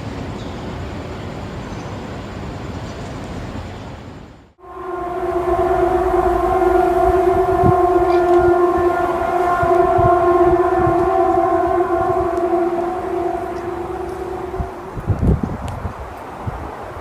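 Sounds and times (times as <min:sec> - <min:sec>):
low horn-like drone: 0:04.6 - 0:16.0.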